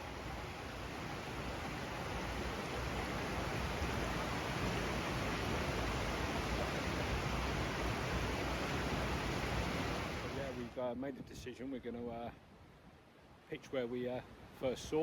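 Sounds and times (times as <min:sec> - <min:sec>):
brook flowing over rocks: 0:00.0 - 0:10.6.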